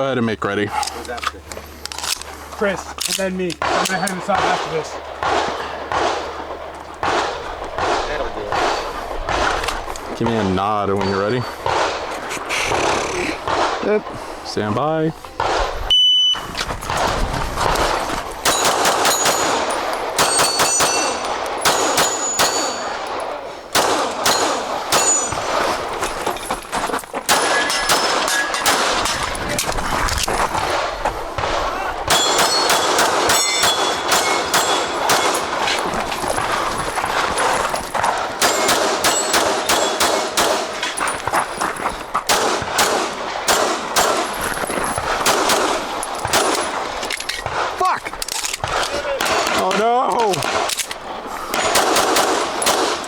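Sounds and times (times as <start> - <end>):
pistol shots: 3.0 - 14.2, 16.8 - 26.0, 27.3 - 29.8, 30.5 - 41.4, 42.2 - 47.8, 48.5 - 53.0
steel targets ringing: 18.4 - 26.5, 27.3 - 29.3, 32.1 - 36.4, 38.4 - 41.4.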